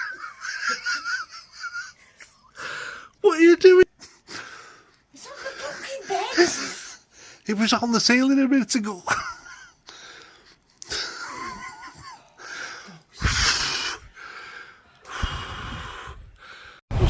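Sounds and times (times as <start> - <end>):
wheezing gasping laughter: 9.4 - 14.2.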